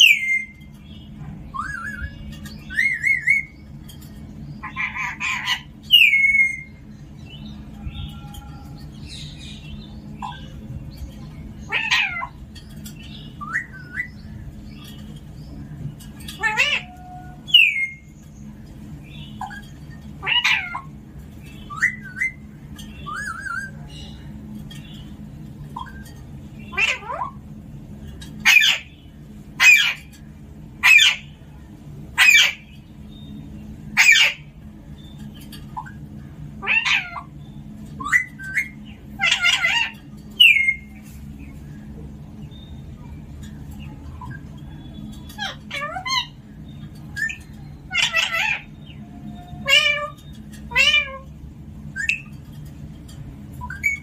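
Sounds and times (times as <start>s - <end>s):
parakeet calls: 0.0s - 31.4s, 32.1s - 52.5s, 53.4s - 54.0s.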